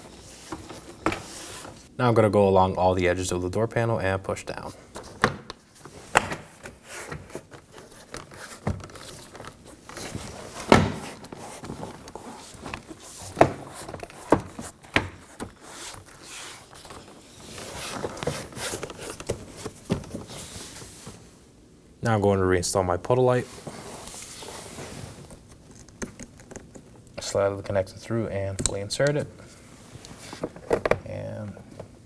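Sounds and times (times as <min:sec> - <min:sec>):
handling rustle: 0:04.8 - 0:21.4.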